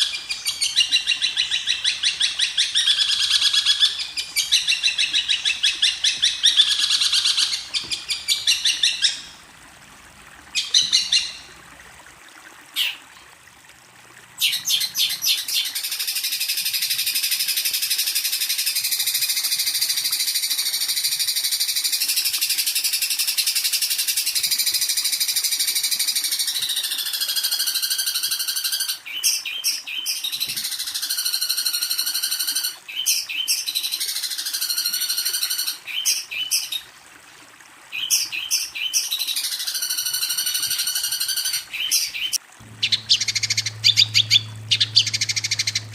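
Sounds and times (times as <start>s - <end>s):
songbird trilling song: 10.6s - 11.4s, 40.9s - 45.9s.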